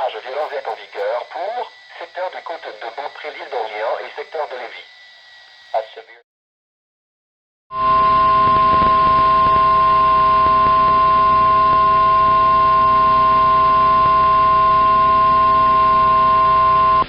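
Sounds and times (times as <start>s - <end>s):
radio hiss: 0.0s - 5.0s, 5.7s - 6.2s
steady alarm tone: 0.0s - 5.9s.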